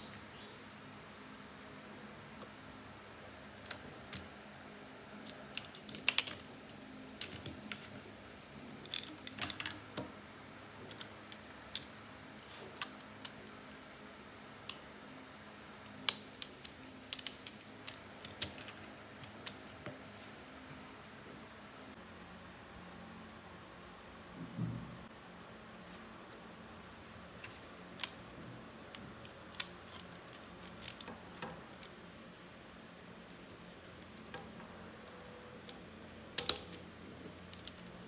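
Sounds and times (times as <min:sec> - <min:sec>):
light clicks of plastic parts: 0:05.1 - 0:08.1, 0:08.7 - 0:13.8, 0:14.6 - 0:20.3, 0:26.3 - 0:32.2, 0:33.1 - 0:38.0.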